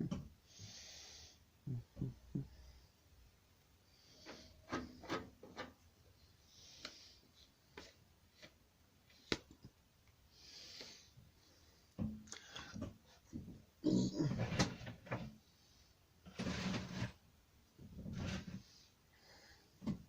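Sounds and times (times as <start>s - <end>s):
scraping and rubbing strokes: 16.3s - 17.2s, 18.0s - 18.9s.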